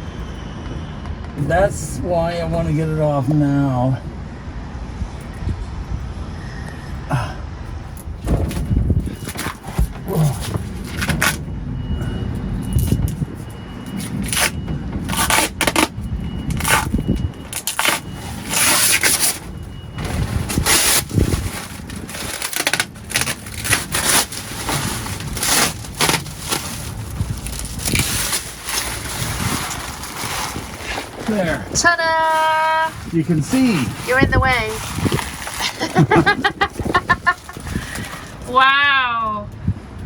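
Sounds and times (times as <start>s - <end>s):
plastic film being peeled off: 14.0s - 15.9s, 16.5s - 31.5s, 32.2s - 38.3s.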